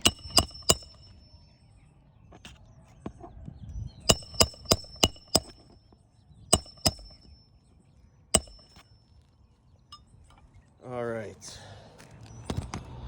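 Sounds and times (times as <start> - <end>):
hammer striking roofing nails: 0.0 - 1.2, 4.1 - 5.8, 6.5 - 7.4, 8.4 - 8.8.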